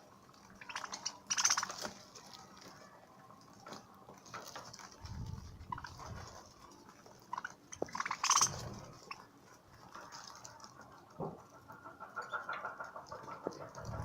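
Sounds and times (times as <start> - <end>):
budgerigars chirping: 0.6 - 1.8, 7.3 - 9.2.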